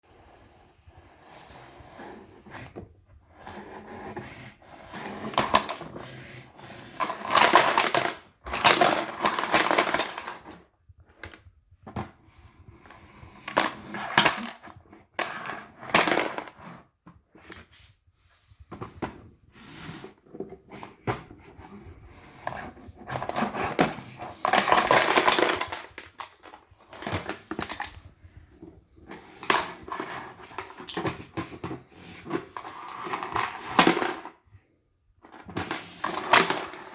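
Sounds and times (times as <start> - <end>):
plastic bricks clattering in vacuum: 7.0 - 10.5, 23.0 - 28.0, 29.2 - 34.4, 35.5 - 36.9.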